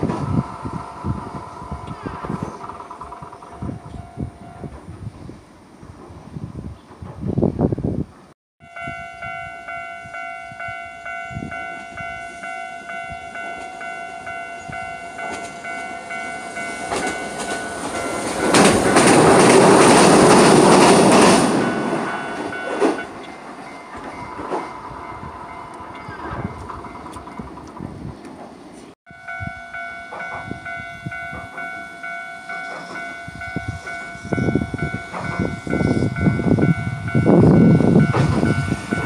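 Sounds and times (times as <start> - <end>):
tram rail noise: 0.0 - 39.0
level-crossing alarm ringing: 8.6 - 27.2, 29.1 - 39.0.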